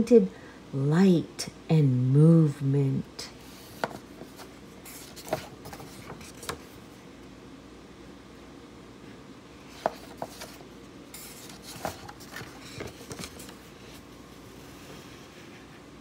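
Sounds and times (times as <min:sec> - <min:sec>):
paper rustling: 0:03.4 - 0:06.9, 0:09.7 - 0:15.6.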